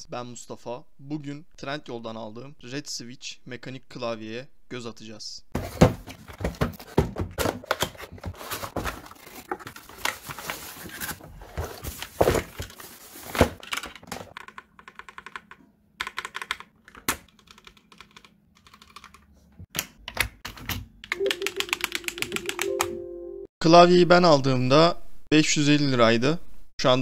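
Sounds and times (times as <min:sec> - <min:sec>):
mechanical keyboard typing: 0:14.3 - 0:19.2, 0:20.1 - 0:23.0.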